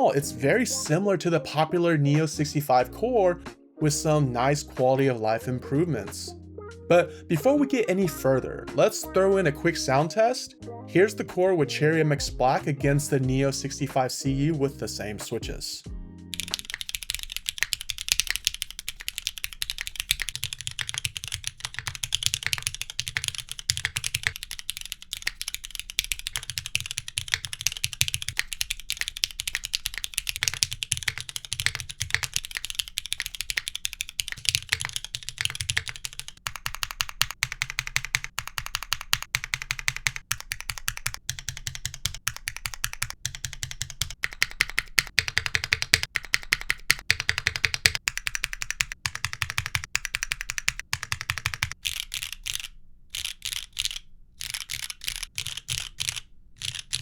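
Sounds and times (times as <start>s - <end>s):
mechanical keyboard typing: 16.3s - 57.0s.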